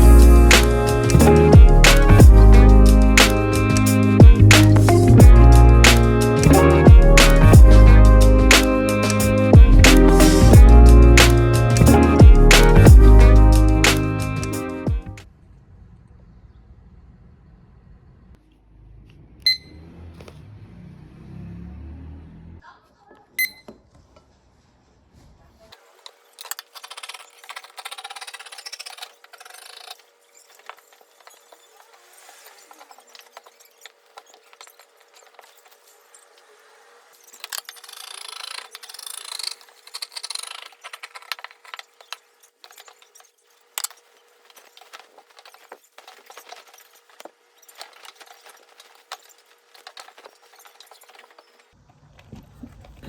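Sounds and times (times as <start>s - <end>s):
rustling and scraping: 23.9s - 53.0s.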